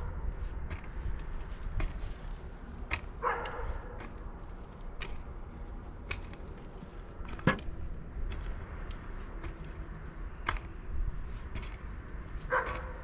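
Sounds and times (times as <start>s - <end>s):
sharp knocks: 7.4s - 7.7s.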